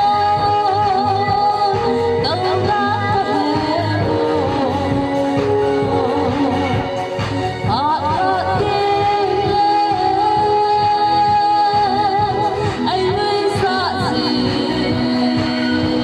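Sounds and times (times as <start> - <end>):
instrumental backing with beat: 0.0 - 16.0
person singing: 0.0 - 16.0.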